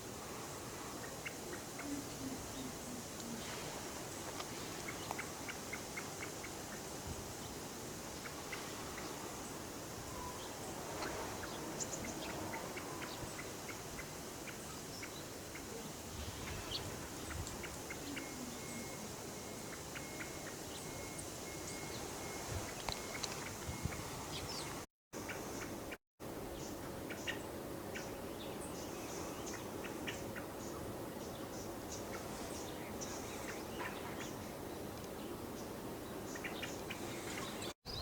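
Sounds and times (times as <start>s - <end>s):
background hiss: 0.0s - 38.0s
bird chirps and ticks: 4.3s - 6.9s, 17.2s - 25.8s.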